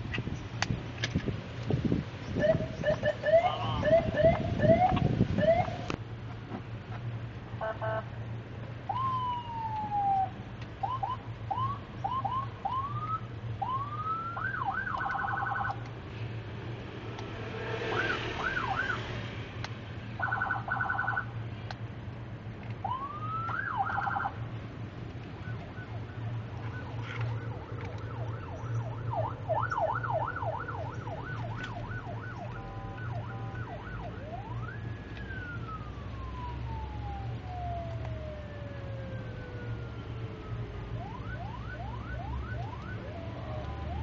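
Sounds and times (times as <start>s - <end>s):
electronic vehicle siren: 2.4s - 5.9s, 7.6s - 8.1s, 8.9s - 15.9s, 17.3s - 19.1s, 20.2s - 21.3s, 22.8s - 24.4s, 25.4s - 44.0s.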